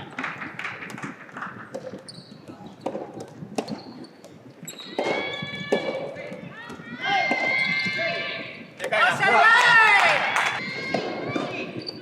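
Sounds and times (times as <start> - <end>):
shoes squeaking on court floor: 1.7 - 5.1.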